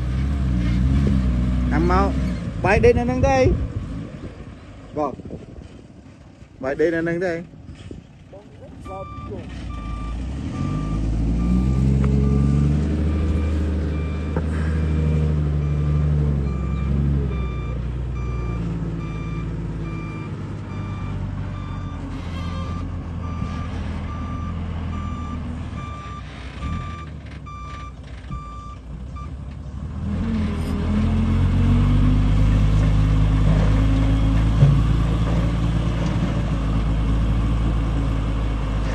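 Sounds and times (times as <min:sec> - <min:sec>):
construction vehicle engine running: 0:07.4 - 0:38.9
reversing alarm beeping: 0:08.8 - 0:29.3.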